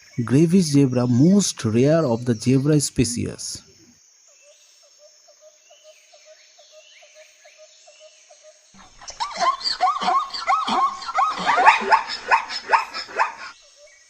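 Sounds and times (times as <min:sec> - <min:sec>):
zebra barking call: 0:08.8 - 0:13.6.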